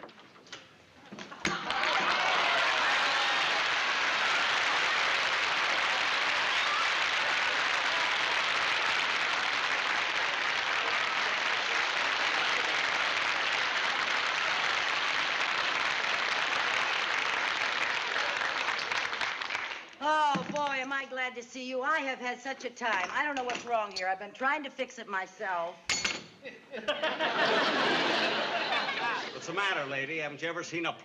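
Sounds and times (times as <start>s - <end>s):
audience applauding: 1.4s - 20.0s.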